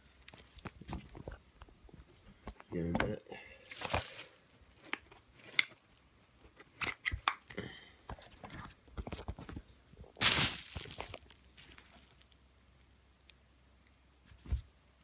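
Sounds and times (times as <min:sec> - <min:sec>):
packaging rustle: 0:03.6 - 0:05.6, 0:10.2 - 0:12.4.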